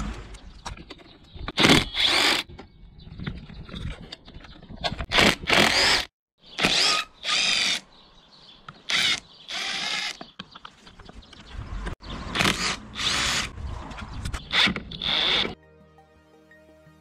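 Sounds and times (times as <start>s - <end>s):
power drill motor whirring: 5.1s - 7.8s, 8.9s - 10.2s, 12.4s - 13.5s, 14.5s - 15.6s.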